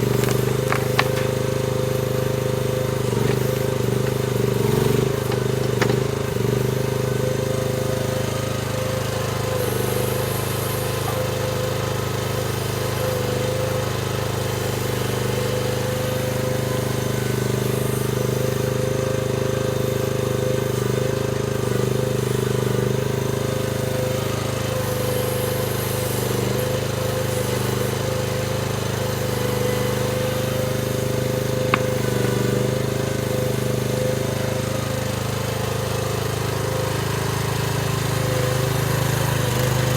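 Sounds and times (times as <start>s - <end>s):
excavator engine running: 0.0s - 7.0s, 30.8s - 33.5s.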